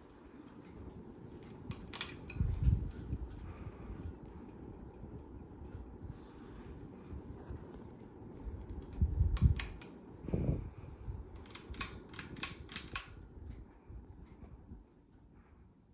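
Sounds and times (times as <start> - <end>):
ceiling fan whooshing: 0.0 - 15.9
sharp clicks: 11.4 - 13.2.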